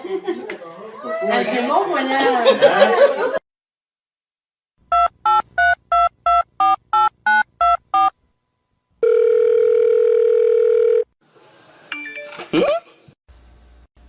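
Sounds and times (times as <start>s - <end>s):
steady telephone tone: 9.0s - 11.1s.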